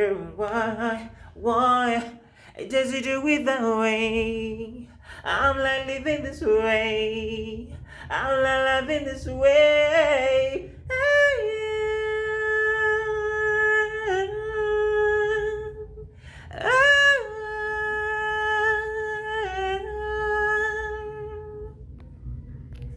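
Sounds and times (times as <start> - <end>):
person breathing: 2.2 - 2.6, 4.8 - 5.3.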